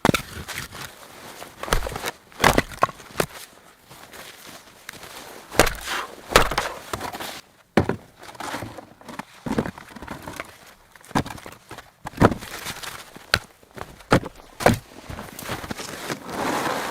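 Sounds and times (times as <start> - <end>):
heavy crunching knocks: 1.6 - 3.0, 5.6 - 6.8.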